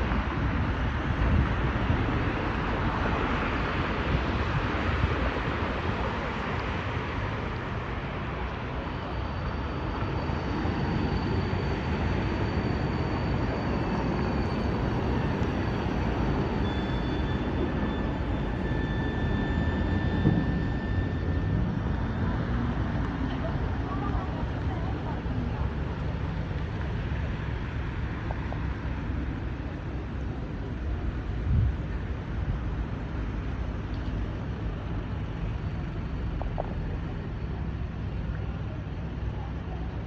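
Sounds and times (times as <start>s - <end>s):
faint high whines: 0.0s - 40.0s
train rumbling along track: 0.0s - 40.0s.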